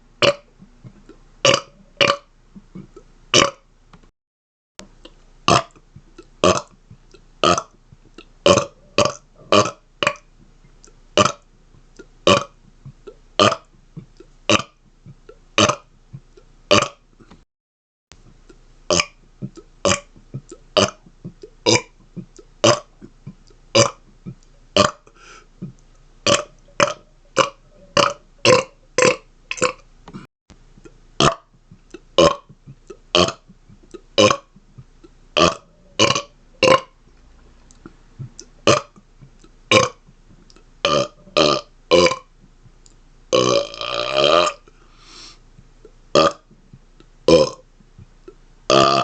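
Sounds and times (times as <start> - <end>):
man burping rapidly: 0.2 - 0.5, 1.4 - 3.7, 5.5 - 5.8, 6.4 - 6.8, 7.4 - 7.8, 8.4 - 10.2, 12.2 - 14.8, 15.6 - 15.9, 16.7 - 17.0, 18.9 - 30.3, 31.2 - 37.0, 38.2 - 39.0, 39.7 - 40.1, 40.8 - 42.3, 43.3 - 45.3, 46.1 - 46.5, 47.3 - 47.6, 48.7 - 49.0.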